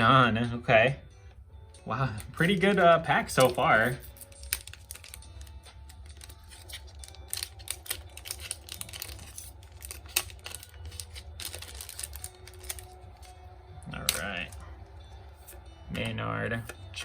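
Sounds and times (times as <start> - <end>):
cards clicking and snapping: 2.2 - 13.4.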